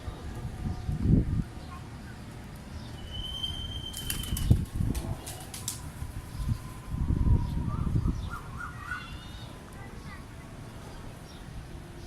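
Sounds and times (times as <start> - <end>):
pigeons flapping wings: 3.9 - 5.9.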